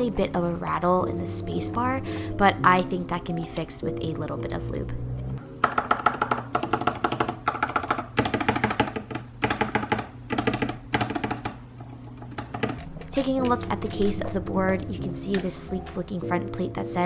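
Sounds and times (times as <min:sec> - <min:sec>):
background music: 0:00.0 - 0:07.3, 0:12.8 - 0:17.0
mechanical keyboard typing: 0:05.6 - 0:11.6, 0:12.2 - 0:16.4.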